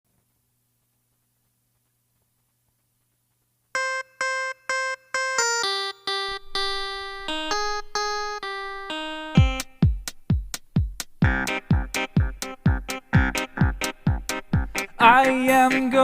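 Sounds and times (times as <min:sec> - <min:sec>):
electronic note melody: 0:03.8 - 0:10.5, 0:11.2 - 0:16.0.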